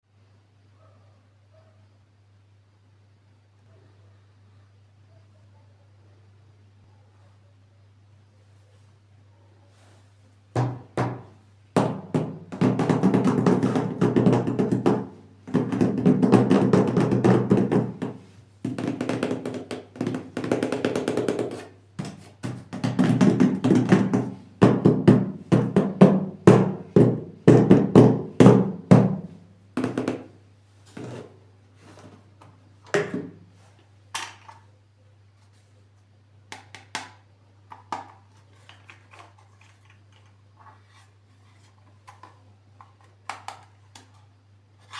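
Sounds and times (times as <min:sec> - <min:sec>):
plastic toy packaging handled: 0:37.7 - 0:44.9
plastic rubbing and scraping: 0:38.0 - 0:44.9.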